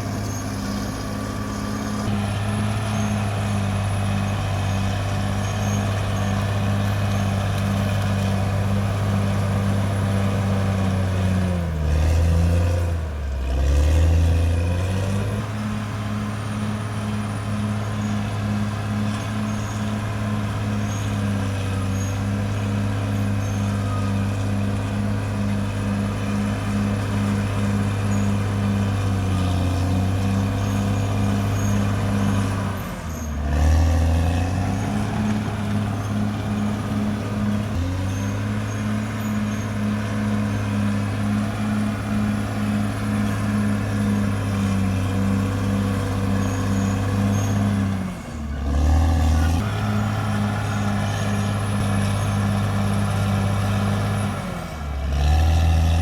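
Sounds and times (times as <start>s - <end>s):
bulldozer diesel engine under load: 0.0s - 56.0s.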